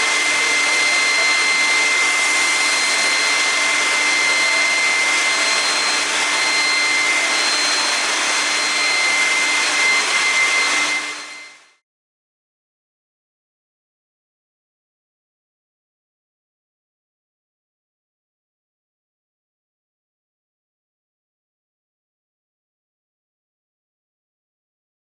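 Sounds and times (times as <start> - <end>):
woodworking machine running: 0.0 - 11.8.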